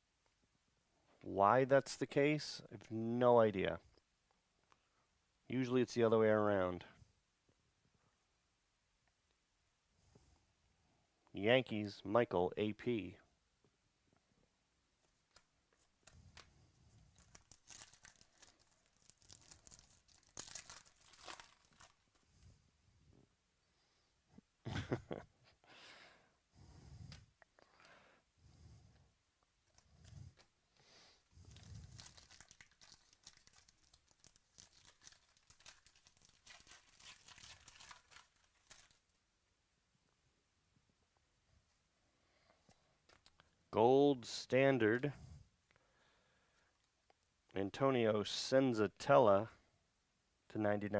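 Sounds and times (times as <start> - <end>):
cards rustling: 15.1 - 22.3, 31.4 - 39.0
foil wrapper tearing and crinkling: 17.1 - 22.2, 31.4 - 39.1.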